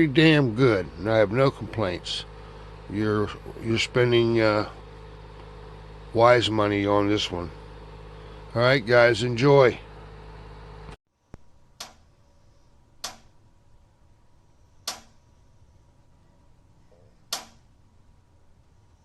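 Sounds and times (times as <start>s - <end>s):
faint steady hum: 0.0s - 19.0s
sharp clicks: 11.3s - 12.0s, 13.0s - 13.3s, 14.8s - 15.2s, 17.3s - 17.6s.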